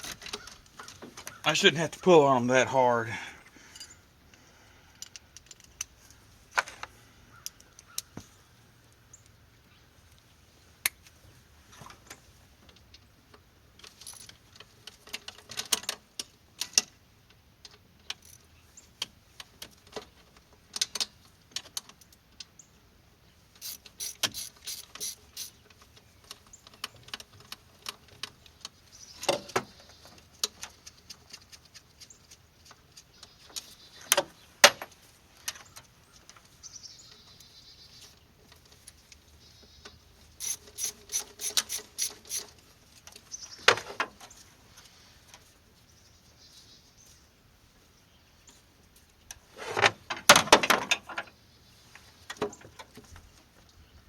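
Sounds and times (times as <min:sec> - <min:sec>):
hand ratchet clicking: 0:23.6 - 0:25.6, 0:40.4 - 0:42.5.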